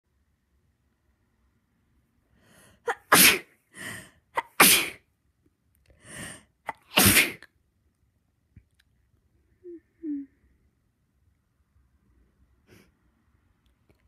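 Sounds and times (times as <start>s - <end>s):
person sneezing: 2.9s - 3.5s, 4.4s - 5.0s, 6.7s - 7.4s.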